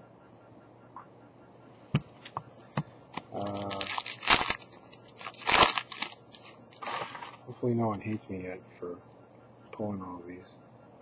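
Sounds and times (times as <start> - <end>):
foil wrapper crinkling and tearing: 3.3 - 7.4.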